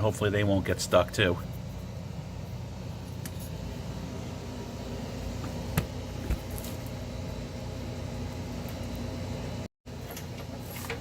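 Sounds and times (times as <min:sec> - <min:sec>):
low mechanical hum: 0:00.0 - 0:11.0.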